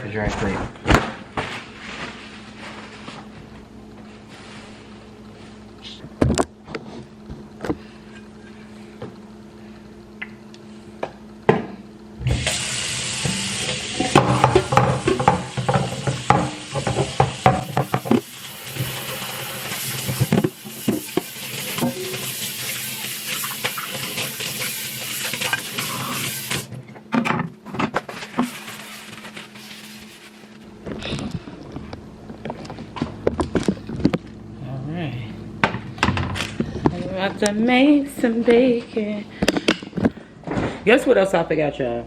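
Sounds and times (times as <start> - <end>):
kitchen tap running: 12.3 - 26.7
dishes clattering in sink: 13.2 - 19.1.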